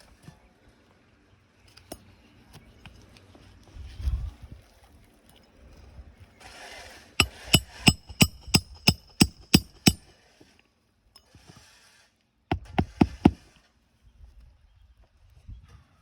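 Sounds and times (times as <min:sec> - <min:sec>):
hammer driving nails: 0:07.2 - 0:10.0, 0:12.5 - 0:13.4.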